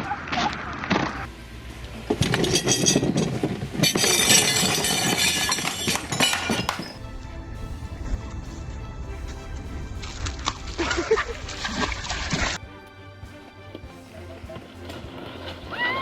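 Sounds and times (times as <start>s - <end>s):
music: 0.0s - 16.0s
clattering clinking crash: 2.1s - 7.0s.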